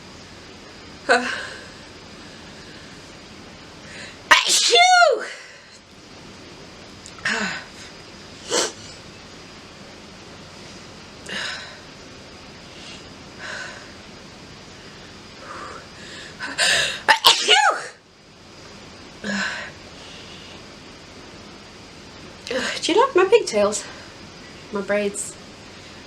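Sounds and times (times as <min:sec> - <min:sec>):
soft breaths: 0:10.4 - 0:14.1
woman sneezing: 0:16.6 - 0:17.9.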